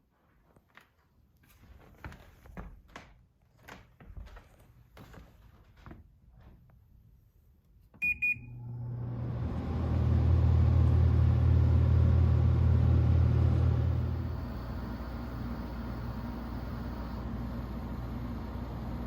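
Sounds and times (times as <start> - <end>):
short beeps: 8.0 - 8.6
air conditioner fan and compressor: 8.1 - 19.0.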